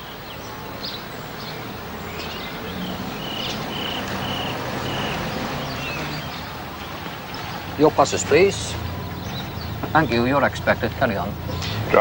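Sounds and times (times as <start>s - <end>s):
car engine humming: 0.0s - 12.0s
small birds chirping: 0.0s - 12.0s.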